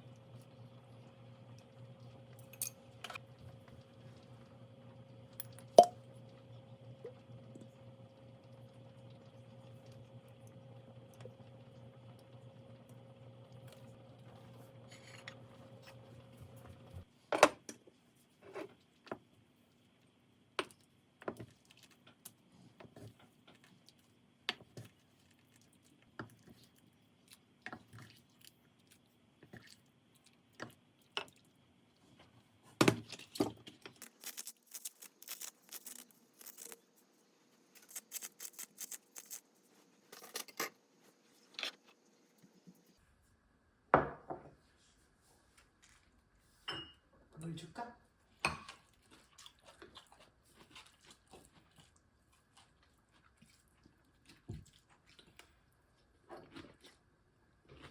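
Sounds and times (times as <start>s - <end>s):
tableware and utensils clinking: 46.7s - 47.0s.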